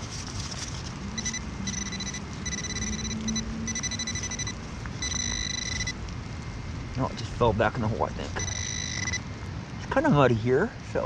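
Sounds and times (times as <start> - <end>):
low hum: 0.0 - 9.9
metal detector tone: 1.2 - 6.0, 8.4 - 9.2.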